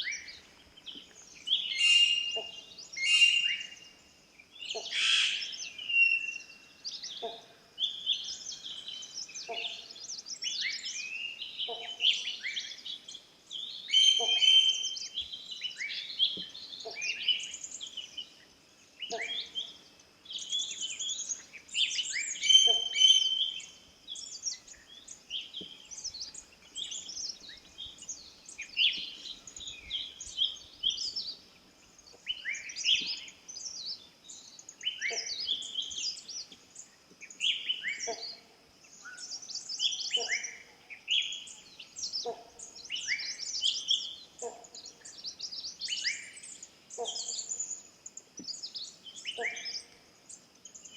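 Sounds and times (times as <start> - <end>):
birds chirping: 19.0 - 50.9.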